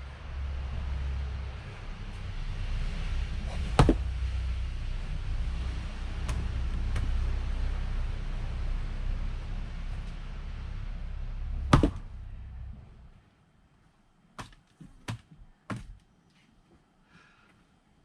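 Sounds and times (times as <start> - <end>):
steady rushing noise: 0.0 - 13.4
axe striking log: 3.5 - 4.0, 11.7 - 12.0.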